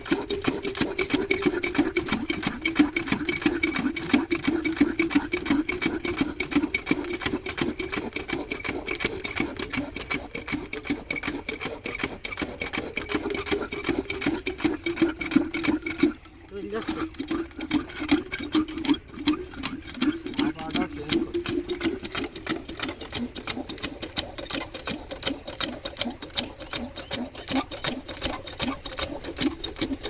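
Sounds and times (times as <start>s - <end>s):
diesel engine clattering: 11.2s - 30.0s.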